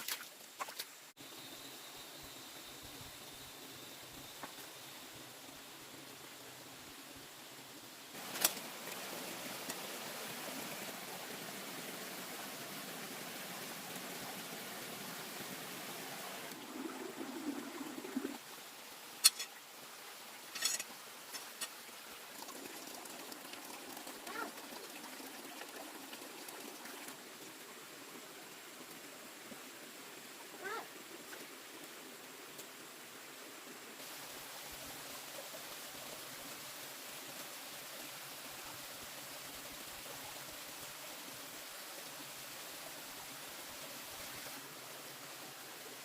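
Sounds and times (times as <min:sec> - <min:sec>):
water pouring: 0:16.3 - 0:18.4, 0:20.5 - 0:27.8.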